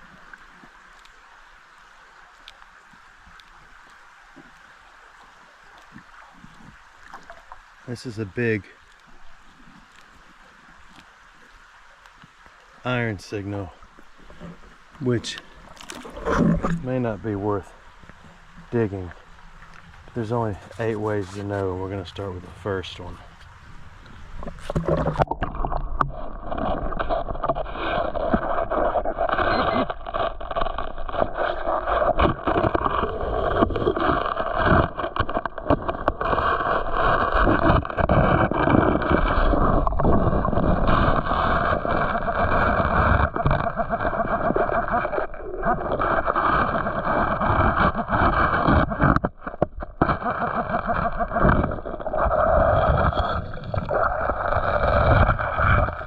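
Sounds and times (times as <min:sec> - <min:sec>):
water churning and gurgling: 0:00.0 - 0:56.0
small knocks and scrapes: 0:13.2 - 0:56.0.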